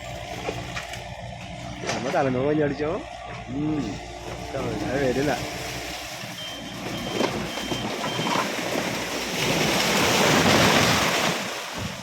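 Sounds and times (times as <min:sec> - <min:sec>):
short high beeps: 0:06.4 - 0:08.4.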